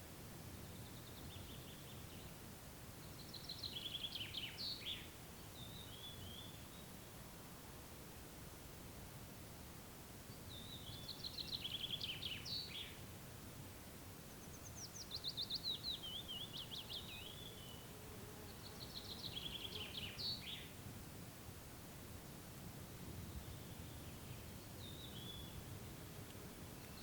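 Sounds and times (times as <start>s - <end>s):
faint background noise: 0.0s - 27.0s
songbird singing: 0.6s - 2.4s, 3.0s - 7.1s, 10.3s - 13.1s, 13.8s - 20.8s, 23.1s - 27.0s.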